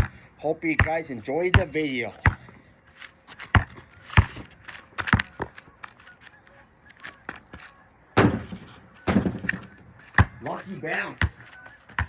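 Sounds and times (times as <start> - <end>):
basketball bouncing: 0.8 - 2.5, 3.6 - 4.4, 8.2 - 12.0.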